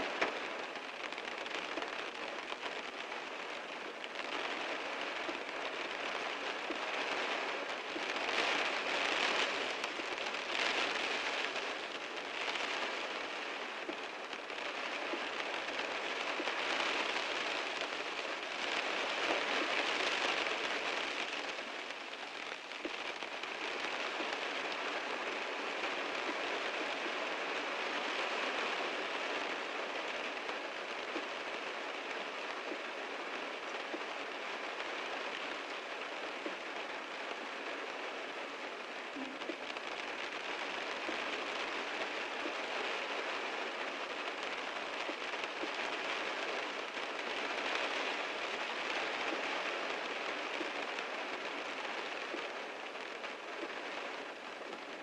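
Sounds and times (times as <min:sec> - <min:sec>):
heavy rain drumming on car roof: 0:00.0 - 0:55.0.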